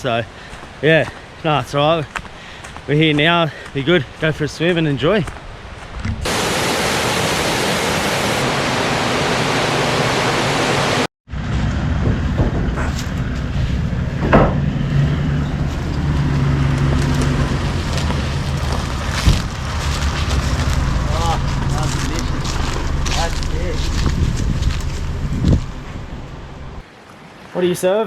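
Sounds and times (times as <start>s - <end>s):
waterfall roar: 6.3s - 11.1s
vehicle engine drone: 6.3s - 26.8s
knocks and rattles: 12.0s - 13.5s, 14.1s - 14.9s.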